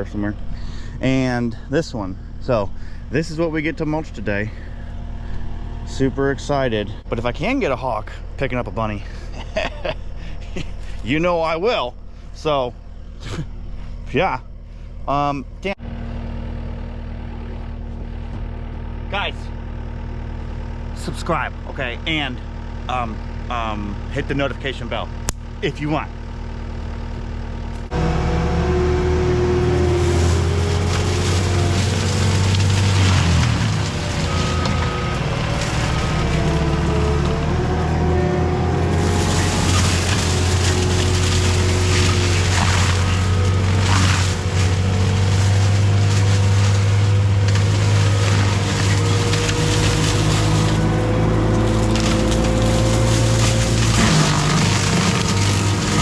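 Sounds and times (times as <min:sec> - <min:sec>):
diesel engine running: 0:00.0 - 0:56.0
thin whine rising in pitch: 0:27.9 - 0:30.9.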